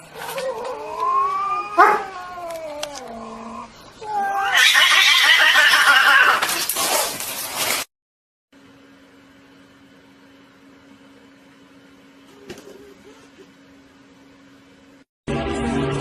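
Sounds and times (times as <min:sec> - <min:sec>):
cat yowling harshly: 0:00.2 - 0:06.7
cat meowing: 0:04.0 - 0:06.4.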